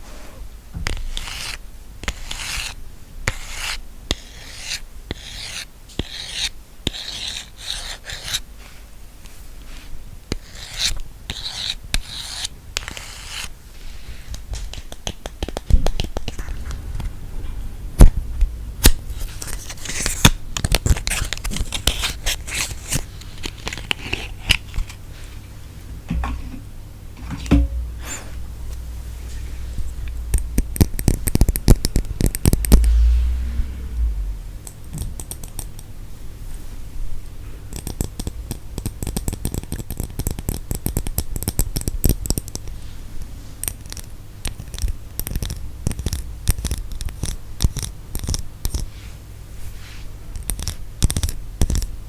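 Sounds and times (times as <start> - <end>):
scratching and rubbing strokes: 28.0 - 35.0.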